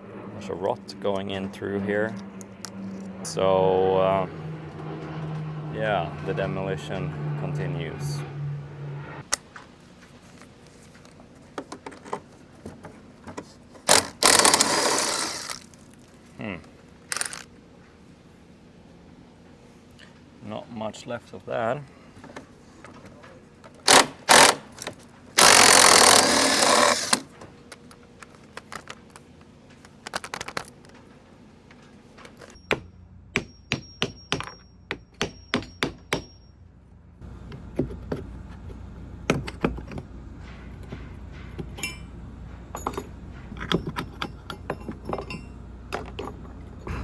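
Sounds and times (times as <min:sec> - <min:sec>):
power tool burst: 0:13.9 - 0:15.7, 0:17.1 - 0:17.4, 0:23.9 - 0:27.3
hammer striking chisel: 0:32.6 - 0:36.5, 0:39.3 - 0:40.1.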